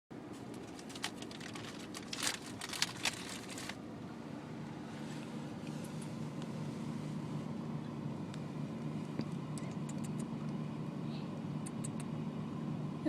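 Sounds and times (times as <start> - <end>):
car road drone: 0.2 - 13.0
crinkling clicks and rustles: 0.3 - 3.8.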